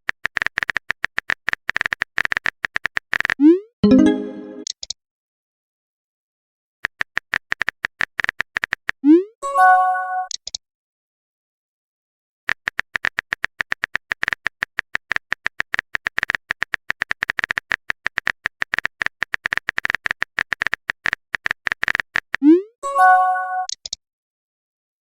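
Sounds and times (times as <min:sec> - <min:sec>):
phone keyboard typing taps: 0:12.5 - 0:22.4.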